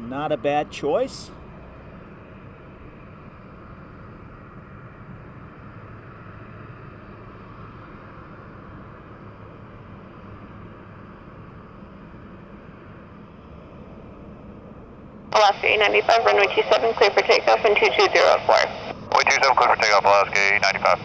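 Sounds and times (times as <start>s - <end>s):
distant jet engine: 0.0s - 21.0s.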